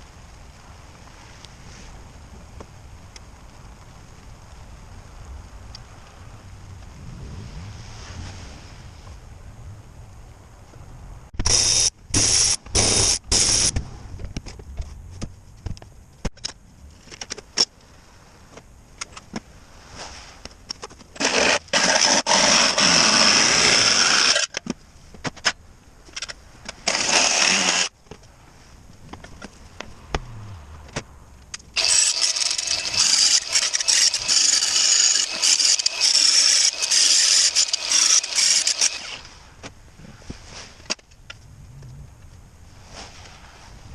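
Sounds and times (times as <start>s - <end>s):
power tool running: 31.8s - 39.2s.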